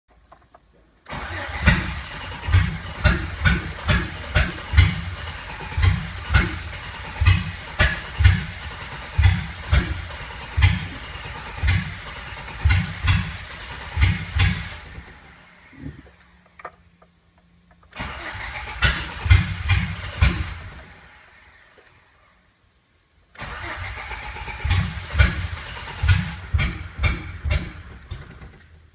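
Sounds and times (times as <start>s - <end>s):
engine cranking on starter: 1.0s - 16.4s, 17.8s - 21.6s, 23.4s - 28.8s
engine misfire pops: 1.1s - 15.2s, 17.7s - 20.9s, 24.5s - 28.8s.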